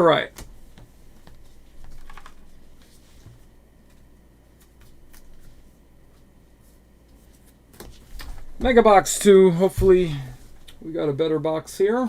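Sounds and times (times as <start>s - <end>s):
trading cards clicking and rustling: 0.3s - 3.0s.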